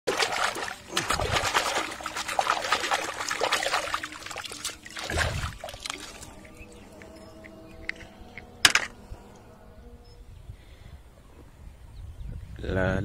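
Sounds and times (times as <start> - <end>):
water pouring and splashing: 0.0 - 6.6.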